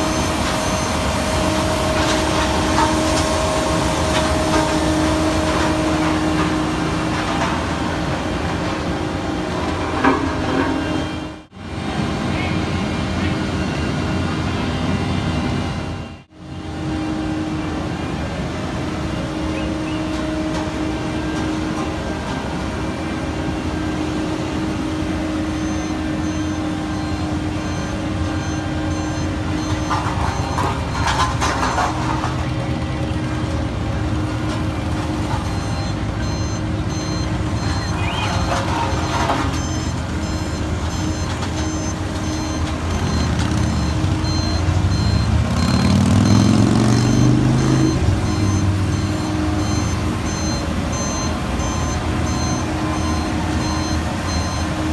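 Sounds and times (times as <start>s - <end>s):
reversing alarm beeping: 0.0s - 11.4s, 18.9s - 54.9s
diesel engines running: 0.0s - 54.9s
engine revving: 34.0s - 53.2s.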